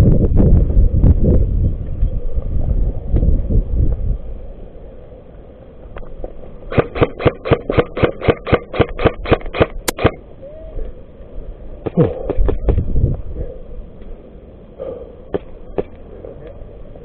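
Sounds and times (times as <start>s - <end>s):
airsoft gun firing: 6.7s - 10.2s.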